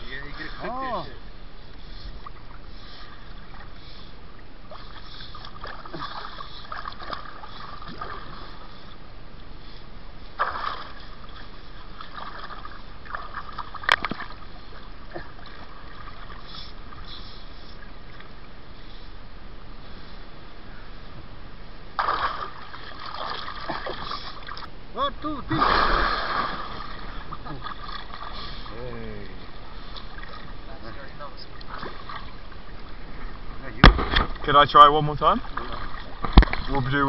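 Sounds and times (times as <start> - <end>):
water sloshing and splashing: 4.6 - 9.0, 10.3 - 18.4, 22.0 - 37.0.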